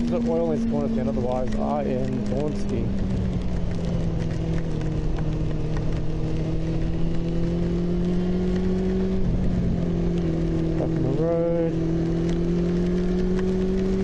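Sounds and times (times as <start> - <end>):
motorcycle engine running: 0.0 - 14.0
wind noise: 0.0 - 14.0.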